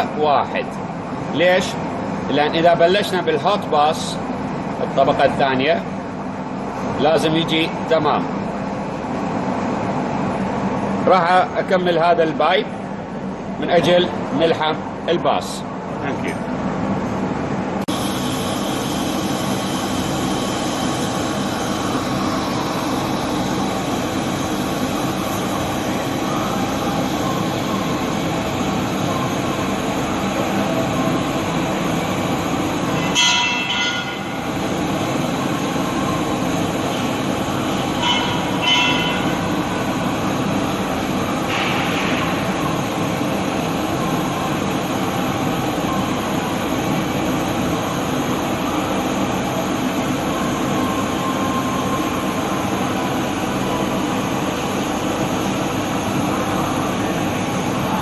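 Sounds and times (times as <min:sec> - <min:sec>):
welding arc hissing: 0:17.9 - 0:26.3.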